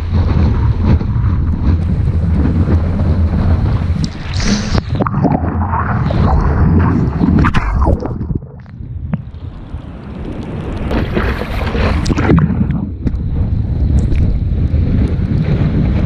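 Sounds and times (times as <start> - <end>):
wind buffeting microphone: 0.0 - 16.0
water splashing: 2.7 - 13.0.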